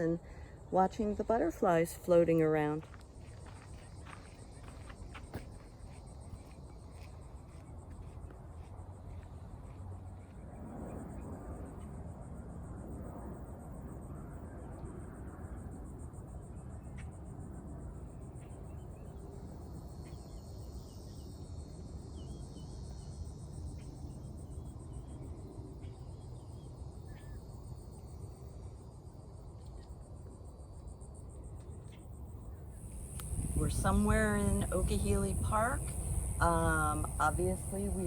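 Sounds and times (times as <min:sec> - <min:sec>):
insects trilling: 0:00.0 - 0:38.0
lower insect trill: 0:00.0 - 0:38.0.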